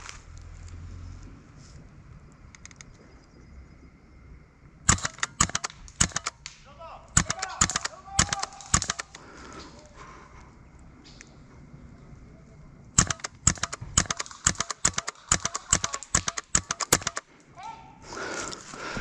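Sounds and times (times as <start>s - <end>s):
airsoft gunshots: 4.9s - 6.4s, 7.2s - 9.2s, 13.0s - 17.3s.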